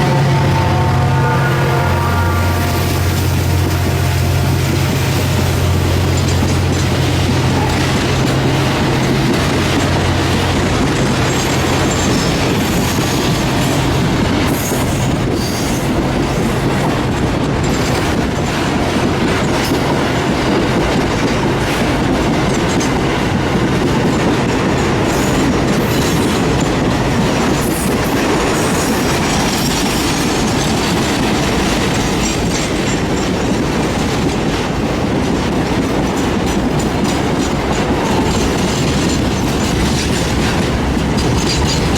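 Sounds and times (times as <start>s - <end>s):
diesel engine drone: 0.0s - 11.4s
wheels clattering over rail joints: 3.1s - 41.9s.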